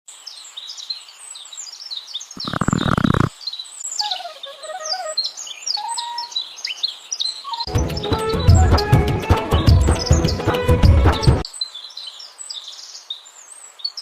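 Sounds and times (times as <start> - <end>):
small birds chirping: 0.2 - 8.6, 11.2 - 14.0
soft stepwise melody: 7.7 - 11.4.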